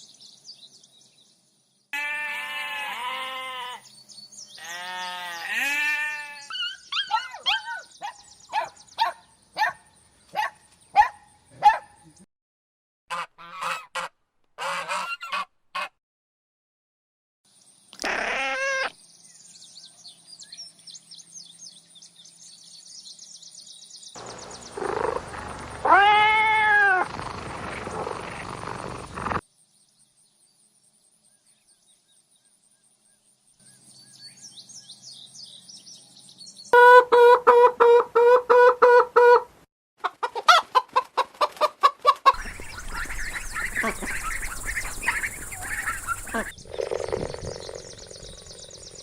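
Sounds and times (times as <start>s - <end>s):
repeated animal calls: 2.0s - 3.9s, 17.9s - 19.0s, 24.2s - 29.4s, 42.3s - 49.0s
cat meowing: 25.8s - 27.1s.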